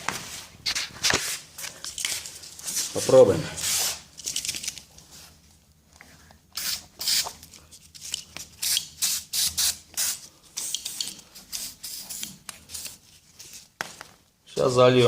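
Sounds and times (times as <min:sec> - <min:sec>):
aerosol spray hissing bursts: 0:06.6 - 0:07.3, 0:08.6 - 0:12.2.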